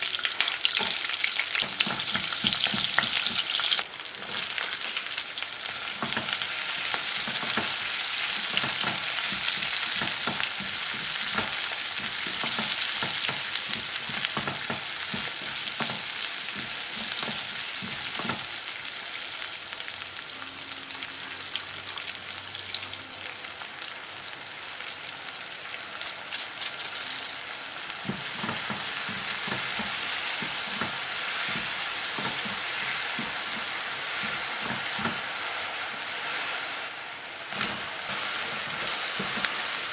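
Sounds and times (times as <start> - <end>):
chicken sizzling in oil: 0.0 - 39.9
spatula stirring in pan: 0.2 - 18.6, 28.0 - 39.9.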